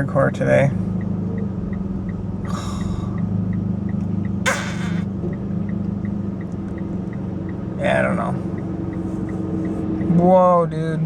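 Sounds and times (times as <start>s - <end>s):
faint regular ticking: 0.0s - 10.5s
car engine hum and road noise: 0.0s - 11.0s
sharp breaths: 2.4s - 3.4s.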